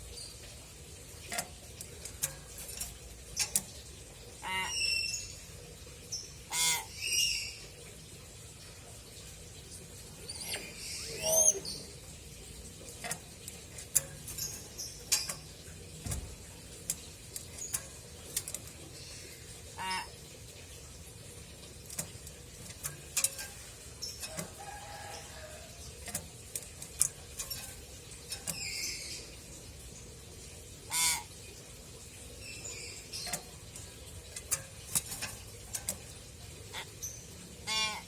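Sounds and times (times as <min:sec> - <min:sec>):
myna bird calls: 0:04.4 - 0:05.4, 0:06.4 - 0:07.6, 0:10.2 - 0:12.0, 0:30.9 - 0:31.4, 0:36.7 - 0:38.0.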